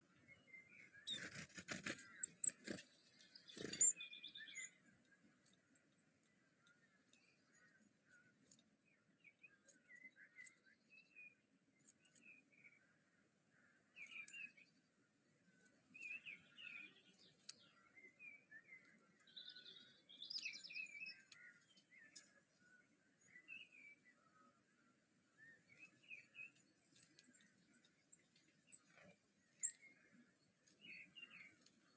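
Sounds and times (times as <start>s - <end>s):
bird trill: 0.2s - 5.1s, 13.9s - 14.8s, 15.9s - 24.5s, 25.4s - 31.9s.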